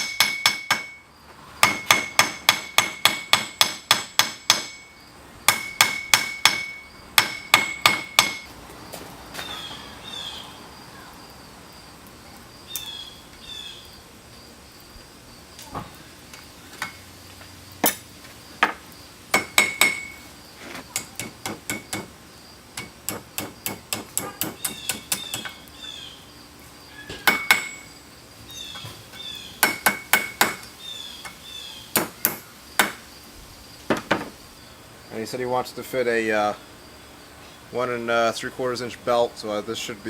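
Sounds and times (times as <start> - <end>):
hammer striking steel on anvil: 0.0 - 1.0, 1.6 - 4.9, 5.5 - 8.5, 18.6 - 20.2, 21.0 - 22.1, 27.2 - 27.8.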